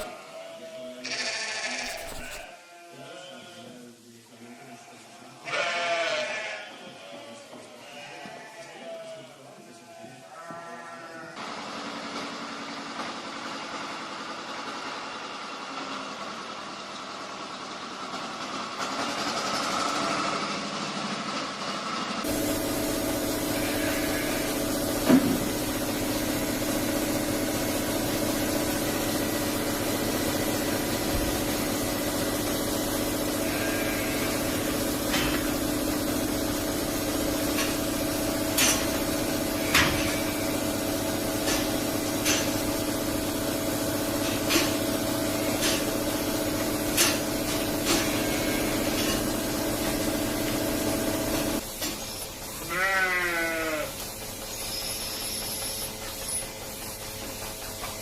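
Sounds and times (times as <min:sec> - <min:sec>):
machine hum: 0:01.8 - 0:02.5, 0:22.2 - 0:52.7.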